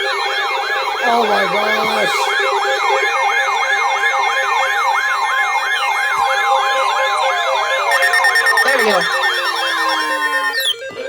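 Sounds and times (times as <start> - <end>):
electronic siren yelping: 6.7 - 11.0.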